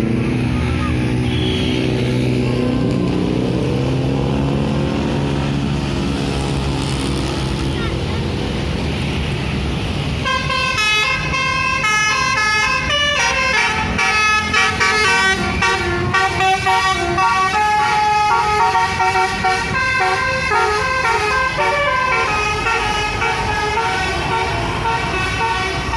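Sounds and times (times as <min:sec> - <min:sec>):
bus engine rumble: 0:00.0 - 0:25.9
musical bus horn playing a tune: 0:10.2 - 0:25.9.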